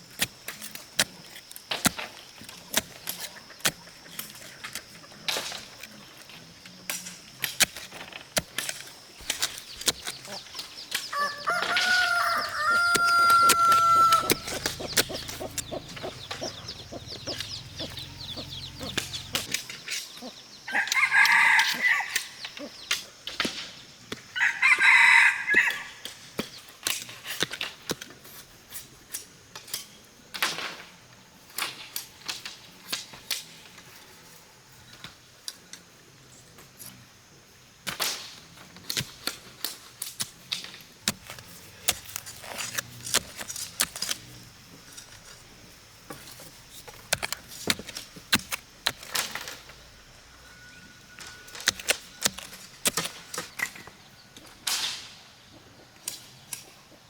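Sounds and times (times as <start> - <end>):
rooster crowing: 11.1 - 19.4, 20.7 - 22.2, 24.4 - 26.0
rooster squawking: 11.2 - 16.7.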